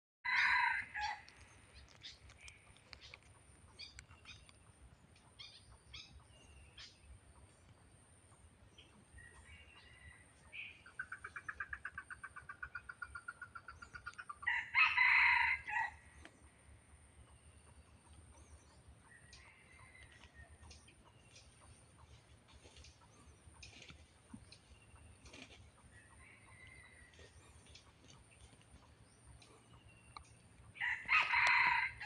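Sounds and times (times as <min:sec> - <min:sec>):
rooster crowing: 0:00.2 - 0:01.2, 0:14.5 - 0:16.0, 0:30.8 - 0:32.0.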